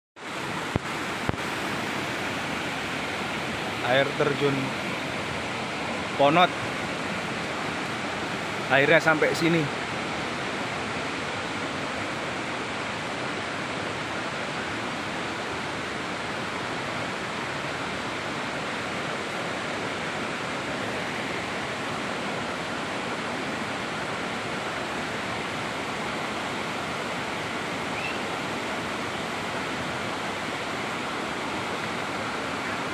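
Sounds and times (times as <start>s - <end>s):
waterfall rushing: 0.2s - 32.9s.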